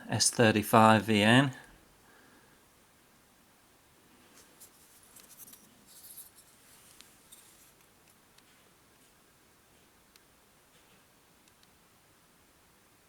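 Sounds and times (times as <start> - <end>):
light clicks: 11.4 - 11.8.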